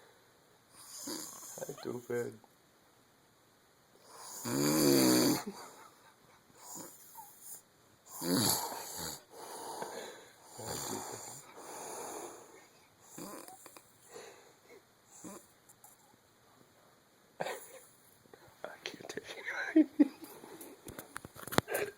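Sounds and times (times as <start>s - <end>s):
loud snore: 0.8s - 1.8s, 4.1s - 5.5s, 6.6s - 12.5s, 13.1s - 13.8s, 15.2s - 15.5s
soft breaths: 8.6s - 15.6s.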